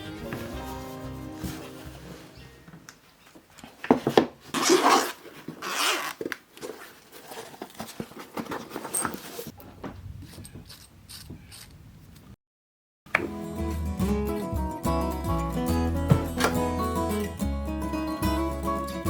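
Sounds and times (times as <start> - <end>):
scraping sounds: 0.0 - 2.7.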